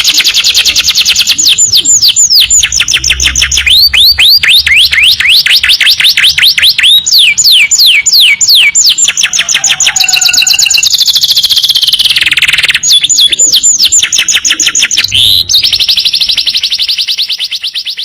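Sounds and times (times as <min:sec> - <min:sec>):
canary singing: 0:00.0 - 0:18.0.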